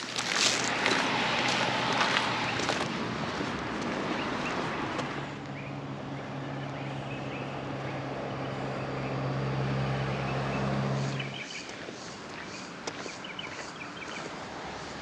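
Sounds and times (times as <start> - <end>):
vehicle engine humming: 0.0 - 15.0
birds chirping: 5.4 - 15.0.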